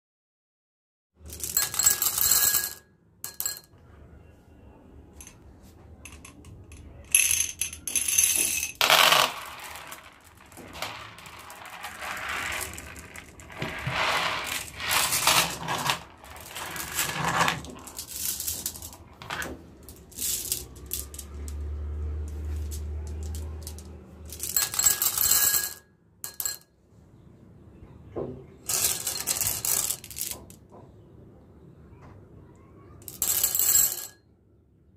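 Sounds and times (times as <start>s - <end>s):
glass marbles clinking: 1.3s - 3.7s, 6.0s - 21.6s, 22.6s - 26.6s, 28.7s - 30.4s, 33.0s - 34.2s.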